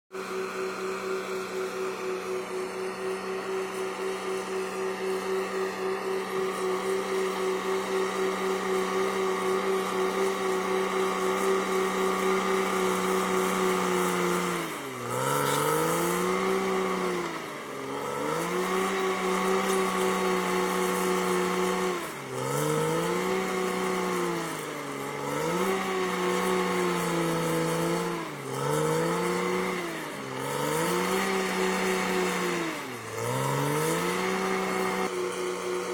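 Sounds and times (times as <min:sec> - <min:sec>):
bulldozer diesel engine high revs: 0:25.2 - 0:35.1.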